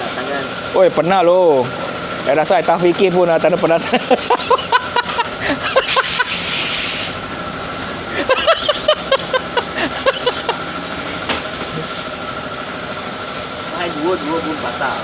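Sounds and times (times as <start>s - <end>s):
workshop clatter: 5.7s - 8.5s, 11.2s - 12.6s
pressurised hiss: 5.8s - 7.3s.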